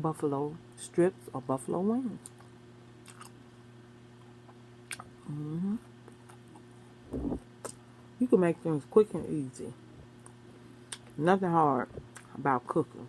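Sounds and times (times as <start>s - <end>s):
faint steady hum: 0.0s - 13.0s
low mouth sound: 5.2s - 5.9s, 7.1s - 7.8s
woman humming mm: 5.2s - 5.9s, 7.1s - 7.5s.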